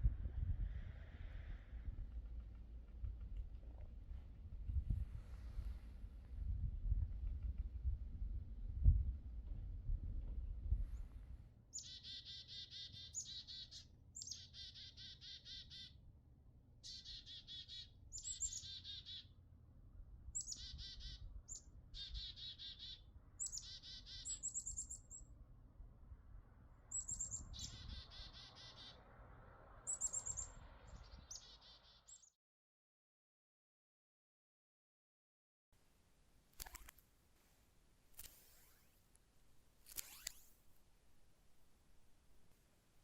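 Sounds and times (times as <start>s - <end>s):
bird singing trilled phrases: 11.7s - 16.0s, 16.8s - 19.3s, 20.4s - 25.3s, 26.9s - 29.0s, 29.9s - 32.3s, 39.9s - 40.5s.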